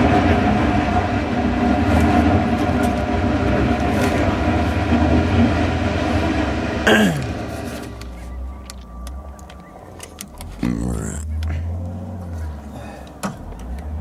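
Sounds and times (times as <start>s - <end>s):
loud mechanical rumble: 0.0s - 14.0s.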